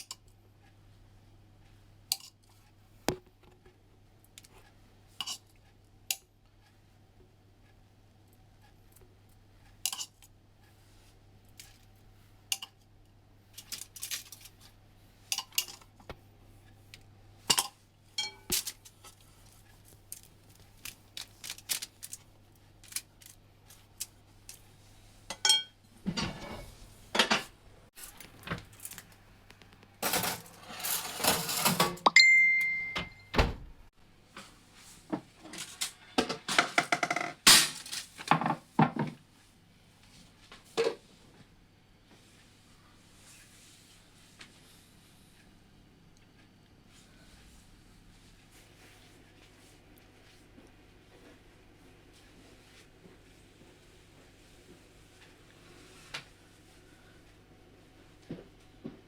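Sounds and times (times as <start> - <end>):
dishes and utensils clattering: 25.3 - 27.5, 30.0 - 33.2.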